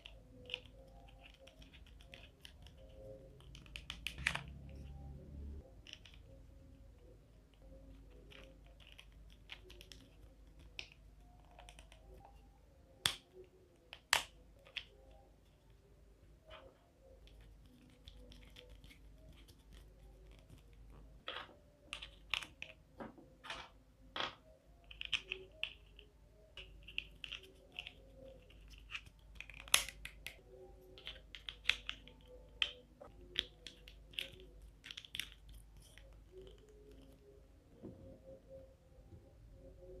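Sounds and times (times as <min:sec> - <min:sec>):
plastic parts clicking and snapping: 0:00.0 - 0:06.4, 0:16.4 - 0:38.0
faint low hum: 0:00.0 - 0:40.0.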